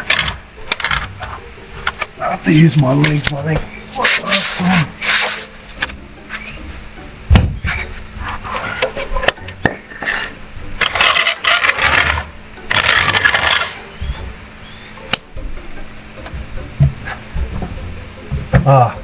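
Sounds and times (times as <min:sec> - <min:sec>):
rough metal scraping: 0:00.0 - 0:06.8, 0:07.6 - 0:14.4
heavy thump: 0:07.3 - 0:07.7.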